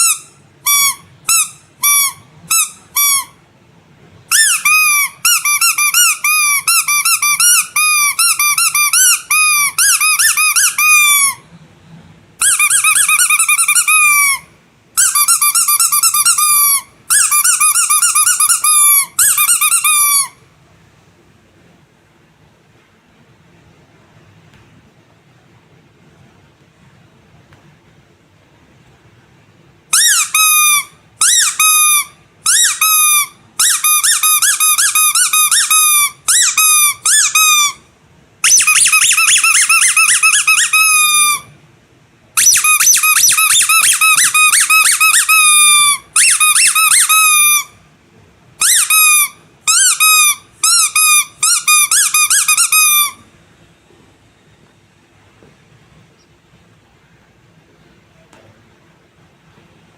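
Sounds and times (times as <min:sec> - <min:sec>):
rubber squeaky toy squeaks: 0:00.0 - 0:03.4, 0:04.3 - 0:11.5, 0:12.4 - 0:20.4, 0:29.9 - 0:37.8, 0:38.4 - 0:41.5, 0:42.4 - 0:47.8, 0:48.6 - 0:53.3.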